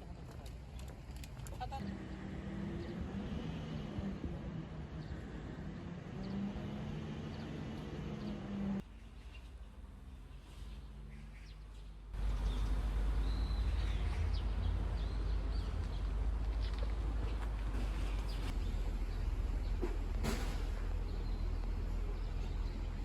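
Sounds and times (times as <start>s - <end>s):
birds chirping: 0.6s - 8.8s, 9.9s - 20.0s.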